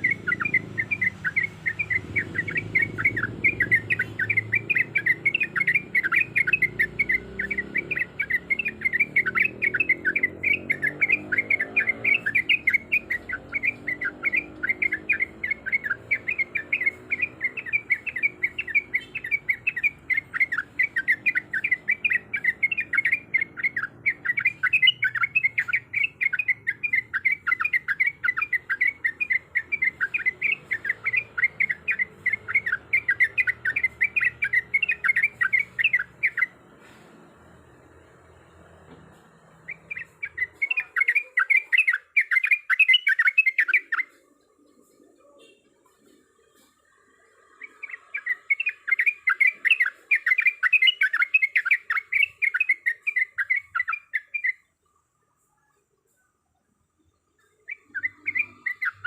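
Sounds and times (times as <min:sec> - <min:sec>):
bird chattering sharp notes: 0:00.0 - 0:36.6.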